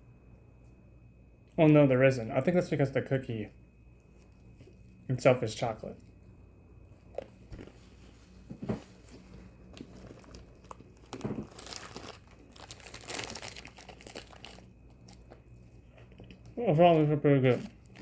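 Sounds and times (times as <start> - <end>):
small handling noises: 3.8 - 18.0
crunching and chewing cookie: 5.9 - 18.0
plastic wrapper crinkling: 8.9 - 18.0.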